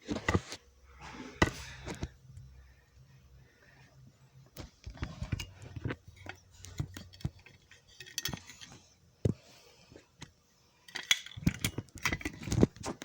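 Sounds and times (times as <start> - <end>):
alarm pull station handling clatter: 5.2 - 8.8, 10.9 - 12.8.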